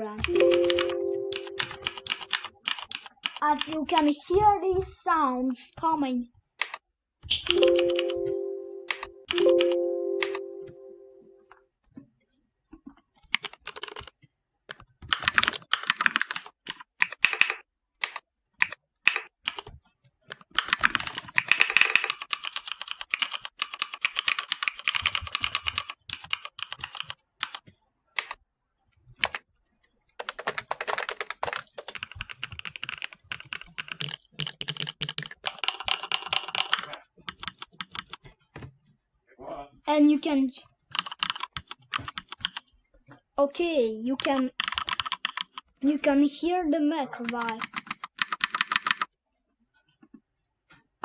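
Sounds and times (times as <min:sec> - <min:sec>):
mechanical keyboard clicks: 0:00.2 - 0:04.2, 0:06.6 - 0:08.3, 0:08.9 - 0:10.4, 0:13.4 - 0:14.1, 0:15.1 - 0:19.7, 0:20.3 - 0:27.6, 0:30.2 - 0:38.2, 0:40.9 - 0:42.6, 0:44.2 - 0:45.7, 0:47.2 - 0:49.1.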